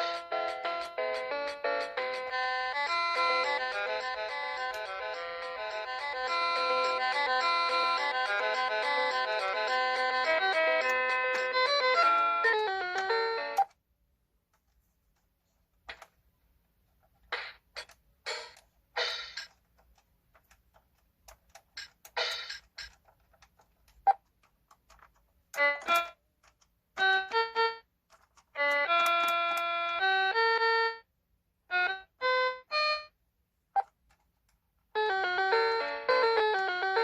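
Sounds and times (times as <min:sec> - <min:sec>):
electronic keyboard melody: 0:00.0 - 0:13.8, 0:25.6 - 0:31.1, 0:31.7 - 0:33.2, 0:34.9 - 0:37.0
held keyboard notes: 0:00.0 - 0:13.8, 0:15.9 - 0:33.2, 0:33.8 - 0:37.0.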